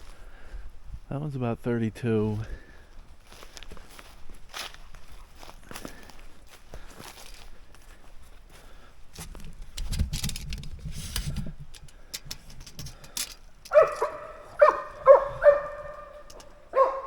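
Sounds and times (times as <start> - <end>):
rustling and snapping in brush: 9.2 - 14.2
dog barking: 13.7 - 17.0.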